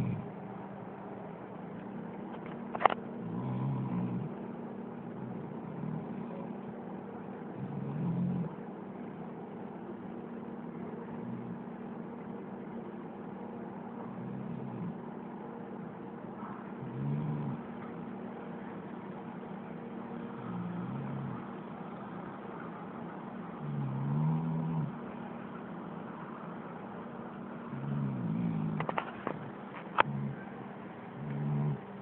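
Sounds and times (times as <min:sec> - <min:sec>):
dog snoring: 0:00.0 - 0:00.4, 0:02.8 - 0:04.4, 0:05.1 - 0:06.6, 0:07.5 - 0:08.6, 0:11.1 - 0:11.7, 0:14.1 - 0:15.1, 0:16.4 - 0:17.9, 0:20.3 - 0:21.6, 0:23.6 - 0:25.2, 0:27.7 - 0:30.6, 0:31.2 - 0:32.0.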